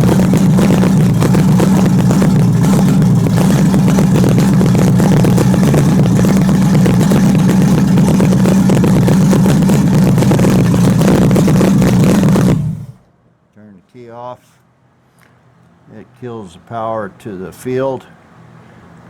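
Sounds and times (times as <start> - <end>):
car engine idling: 0.0 - 13.1.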